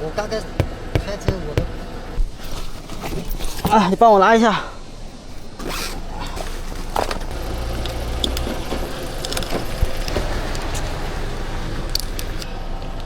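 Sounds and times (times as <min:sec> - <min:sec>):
vehicle engine idling: 0:00.0 - 0:02.2, 0:04.8 - 0:13.0.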